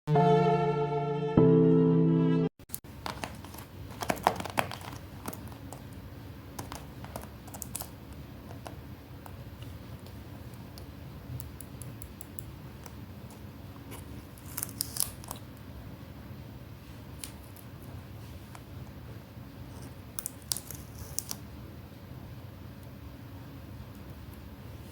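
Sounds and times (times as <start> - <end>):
paper rustling and crinkling: 3.0 - 5.8.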